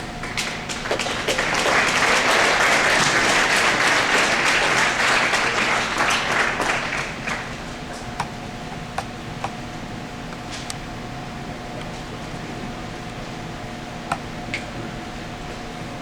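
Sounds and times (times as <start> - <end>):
audience applauding: 0.2 - 7.8.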